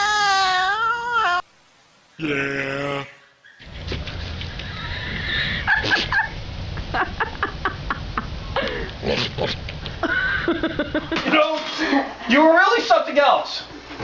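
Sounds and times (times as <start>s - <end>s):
steady low rumble: 3.6s - 11.2s.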